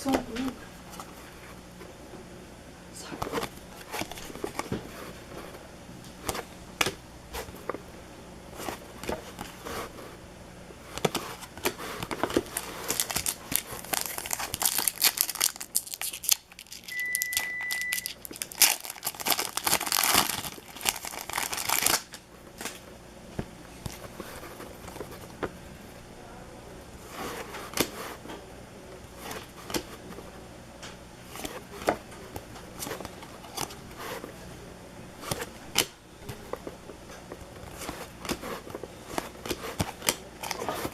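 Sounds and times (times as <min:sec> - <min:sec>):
cards clicking and rustling: 0:03.2 - 0:07.8, 0:10.9 - 0:22.8, 0:29.2 - 0:30.0, 0:35.2 - 0:40.9
plastic wrappers tearing and crinkling: 0:11.0 - 0:22.8, 0:39.1 - 0:40.9
high beep: 0:16.9 - 0:18.1.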